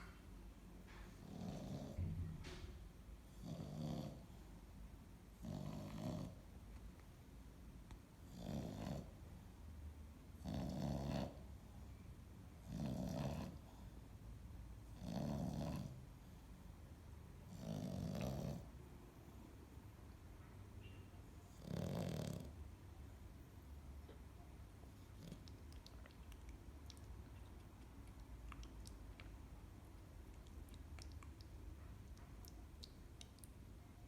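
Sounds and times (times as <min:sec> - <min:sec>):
dog snoring: 0:01.2 - 0:02.1, 0:03.3 - 0:04.4, 0:05.4 - 0:06.4, 0:08.2 - 0:09.1, 0:10.4 - 0:11.4, 0:12.6 - 0:13.9, 0:14.9 - 0:16.0, 0:17.4 - 0:18.7, 0:21.4 - 0:22.6, 0:25.1 - 0:27.0.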